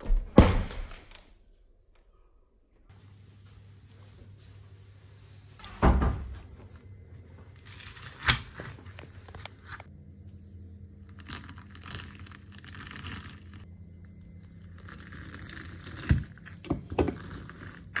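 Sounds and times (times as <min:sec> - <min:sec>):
crackling and crumpling: 0:06.6 - 0:09.9, 0:10.8 - 0:18.0.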